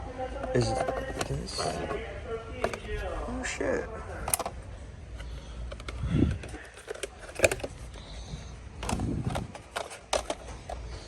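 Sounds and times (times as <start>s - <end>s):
packaged toys clicking and rattling: 5.7s - 8.0s, 8.8s - 11.0s.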